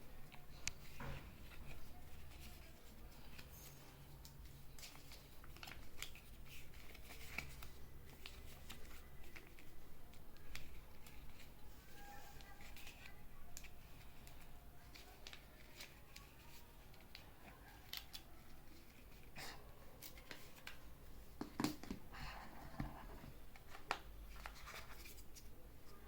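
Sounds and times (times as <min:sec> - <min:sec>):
packaging clicks and rustles: 0:00.2 - 0:19.3.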